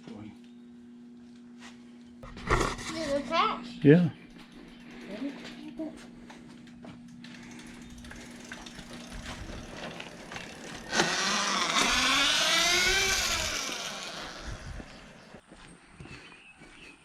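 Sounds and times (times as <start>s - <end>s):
electric motor whining: 7.3s - 15.4s.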